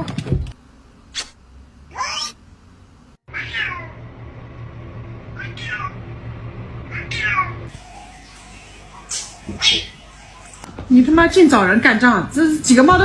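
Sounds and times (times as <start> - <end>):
steady low hum: 0.4 - 13.0
cat meowing: 1.9 - 2.4, 3.3 - 4.0, 5.4 - 6.0.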